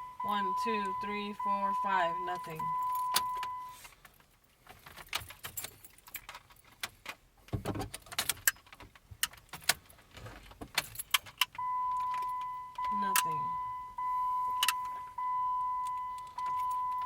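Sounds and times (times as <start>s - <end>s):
electronic warning tone: 0.0s - 3.8s, 11.6s - 17.0s
car keys jangling: 2.4s - 7.2s, 7.8s - 13.3s, 14.5s - 15.0s, 15.6s - 17.0s.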